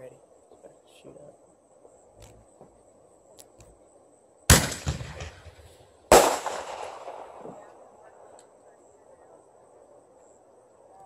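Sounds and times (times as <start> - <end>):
firework explosions: 4.5 - 7.8.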